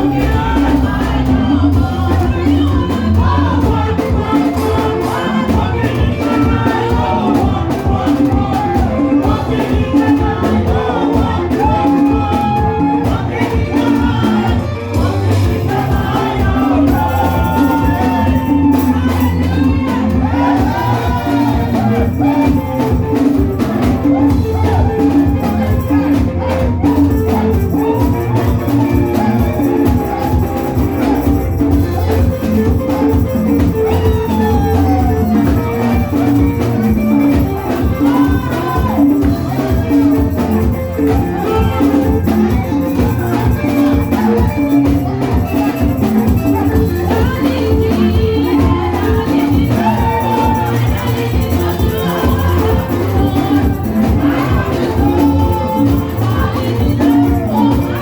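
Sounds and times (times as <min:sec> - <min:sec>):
praise music with heavy bass: 0:00.0 - 0:58.0
voices singing: 0:00.0 - 0:58.0.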